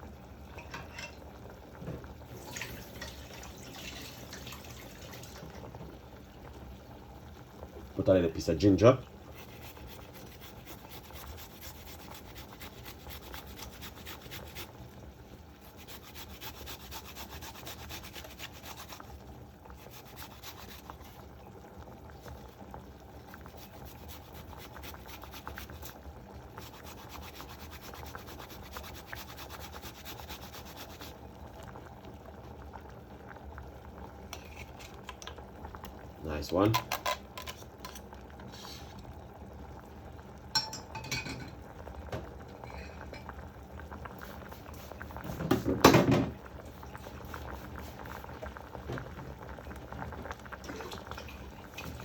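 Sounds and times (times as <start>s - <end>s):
ginger rasping on a grater: 9.3s - 14.7s, 15.6s - 19.1s, 19.8s - 21.2s, 23.4s - 25.9s, 26.6s - 31.1s.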